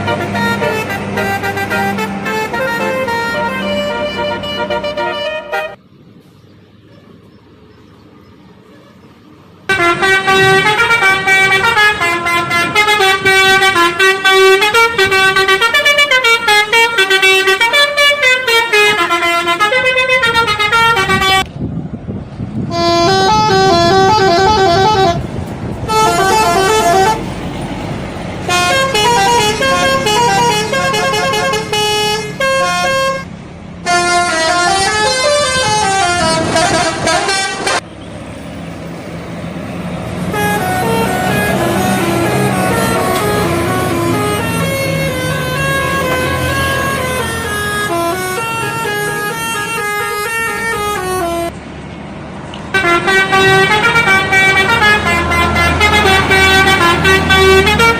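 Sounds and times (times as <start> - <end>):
bus musical air horn: 0.0 - 5.8, 9.7 - 21.5, 22.6 - 27.6, 28.4 - 37.8, 40.2 - 51.6, 52.7 - 57.9.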